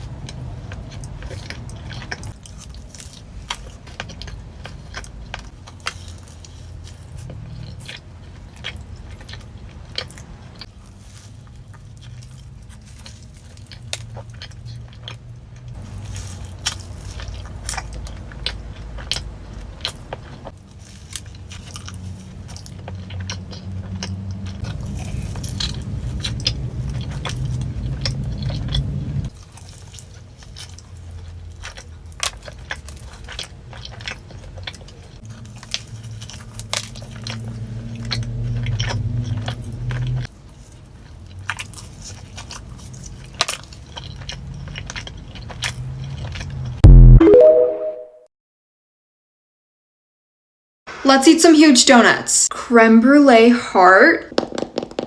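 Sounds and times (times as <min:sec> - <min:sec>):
biting and chewing: 0:00.0 - 0:47.1
low hum: 0:46.8 - 0:48.2.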